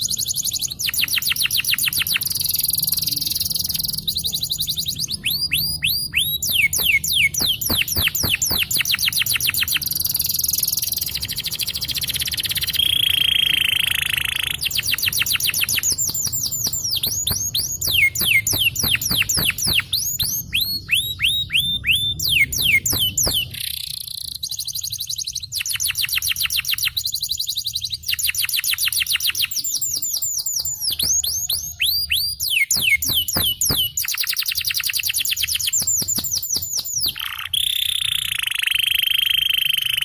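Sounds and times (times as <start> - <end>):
canary singing trills: 0.0 - 40.0.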